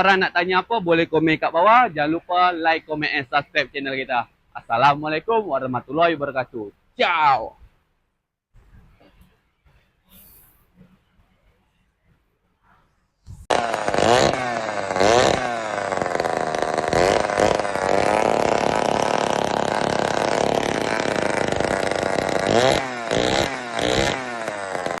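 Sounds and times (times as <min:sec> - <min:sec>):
two-stroke engine revving: 0:13.5 - 0:25.0.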